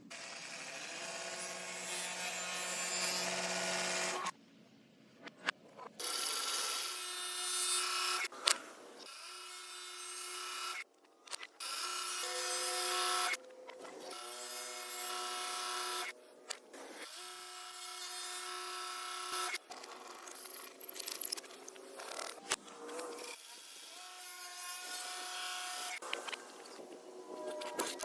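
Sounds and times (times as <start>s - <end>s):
power tool working wood: 0.1s - 4.3s.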